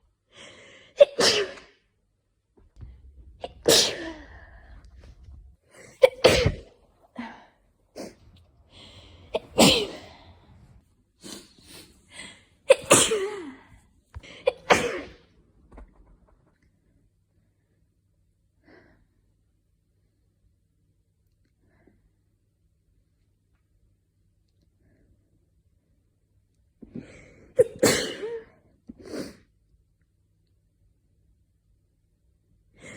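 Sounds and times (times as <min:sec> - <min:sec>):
person sneezing: 0:00.9 - 0:01.8, 0:03.4 - 0:04.8, 0:05.8 - 0:07.4, 0:08.0 - 0:10.5, 0:11.2 - 0:13.7, 0:14.3 - 0:15.2, 0:27.6 - 0:28.5.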